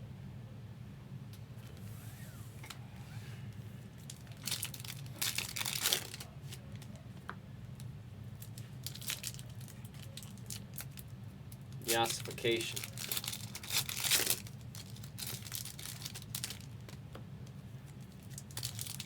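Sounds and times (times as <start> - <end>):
steady low hum: 0.0 - 19.0
foil wrappers crinkling and tearing: 4.0 - 6.9, 8.4 - 17.0, 17.9 - 19.0.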